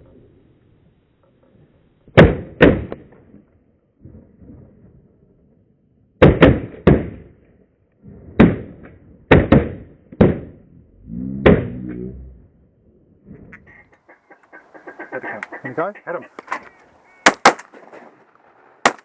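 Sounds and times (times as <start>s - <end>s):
shotgun blasts: 2.2s - 3.1s, 6.2s - 7.3s, 17.2s - 18.2s.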